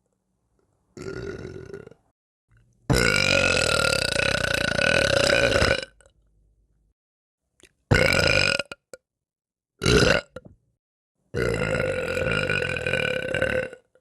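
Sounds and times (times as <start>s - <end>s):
woman burping: 2.9s - 6.0s.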